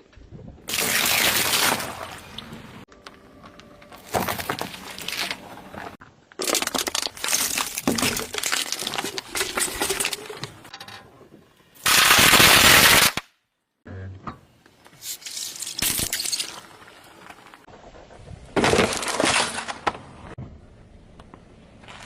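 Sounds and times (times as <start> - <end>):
objects cracking under a press: 3.0 - 10.8.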